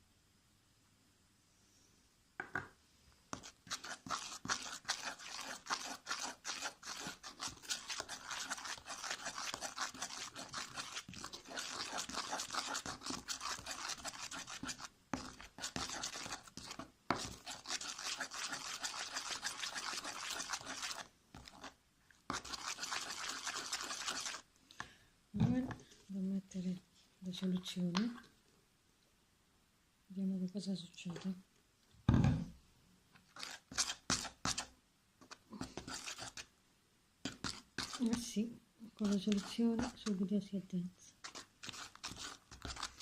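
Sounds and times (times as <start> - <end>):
slime scraping and squishing: 3.4 - 24.4, 33.3 - 36.5, 37.3 - 38.3, 39.0 - 40.2, 41.2 - 43.0.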